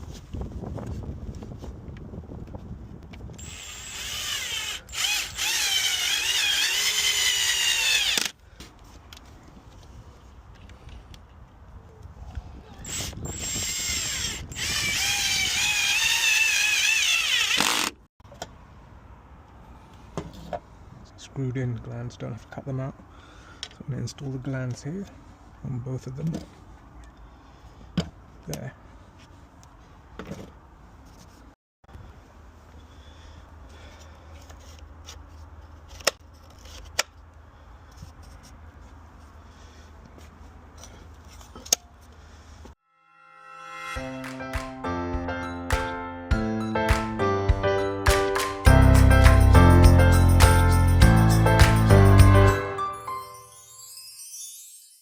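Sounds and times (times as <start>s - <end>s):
cordless drill motor whining: 3.4s - 8.4s, 12.9s - 18.0s.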